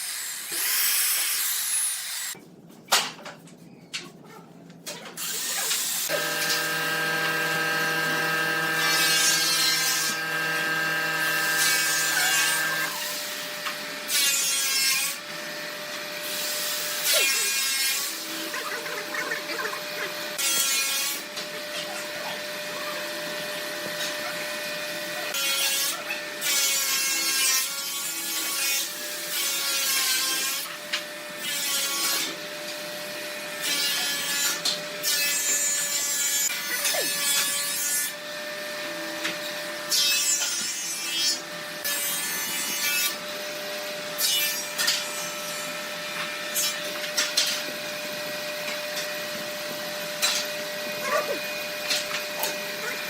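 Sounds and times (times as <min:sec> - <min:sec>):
power tool cutting into wood: 0:00.0 - 0:02.4, 0:05.2 - 0:22.6
power tool whining: 0:05.2 - 0:13.8.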